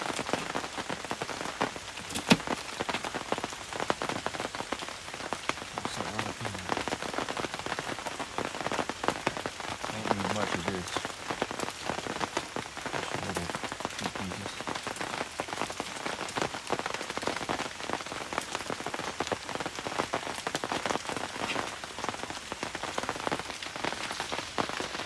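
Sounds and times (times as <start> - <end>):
rain on a hard surface: 0.0 - 25.0.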